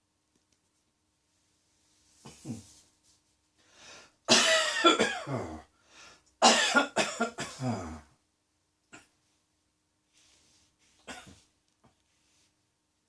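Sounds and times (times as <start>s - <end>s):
person coughing: 4.3s - 5.7s, 6.4s - 8.1s, 11.0s - 11.4s.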